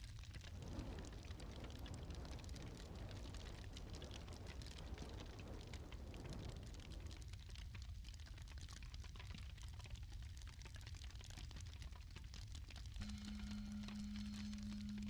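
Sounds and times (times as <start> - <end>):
wood fire crackling: 0.0 - 15.0
low steady rumble: 13.0 - 15.0.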